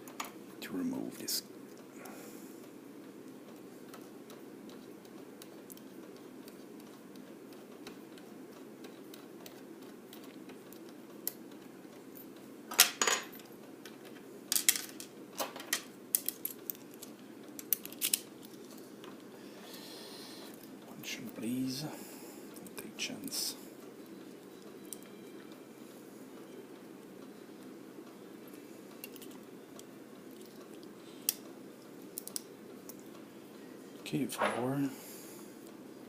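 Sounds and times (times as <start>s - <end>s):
metal lock parts clicking: 14.6s - 18.6s.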